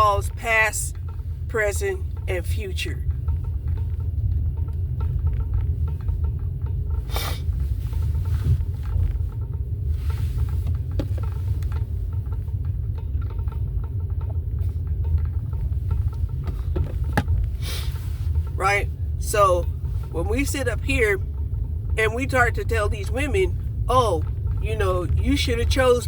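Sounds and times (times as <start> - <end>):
steady low rumble: 0.0 - 26.0.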